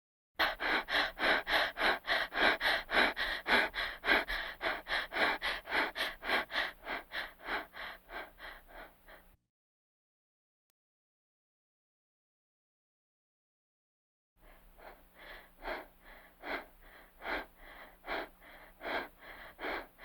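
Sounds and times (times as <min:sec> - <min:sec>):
rapid heavy breathing: 0:00.4 - 0:09.4, 0:14.4 - 0:20.0.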